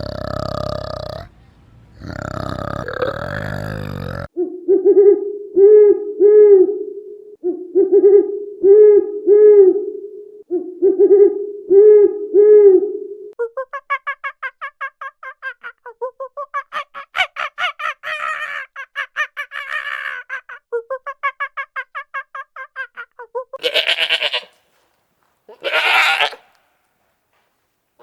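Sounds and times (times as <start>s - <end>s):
rapid repeated animal calls: 0.0s - 1.3s, 16.6s - 20.6s, 25.5s - 26.5s
harsh bleat-like animal calls: 23.6s - 24.6s, 25.5s - 26.6s.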